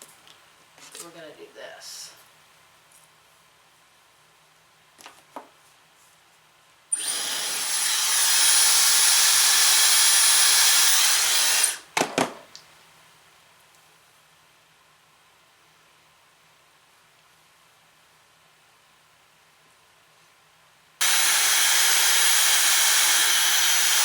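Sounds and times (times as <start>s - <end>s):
hair dryer running: 6.9s - 11.8s, 21.0s - 24.0s.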